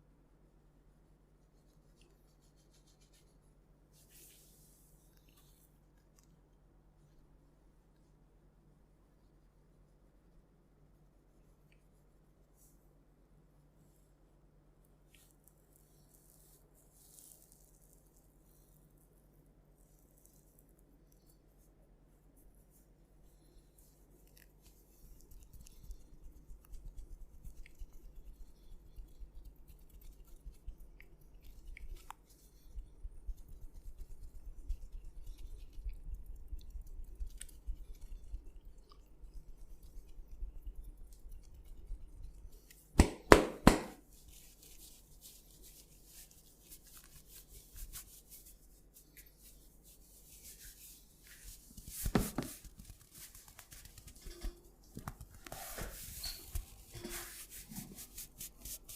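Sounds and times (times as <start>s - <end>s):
hands rubbing hair and scalp: 1.5s - 6.0s, 15.1s - 18.6s, 22.3s - 38.5s, 41.1s - 58.9s.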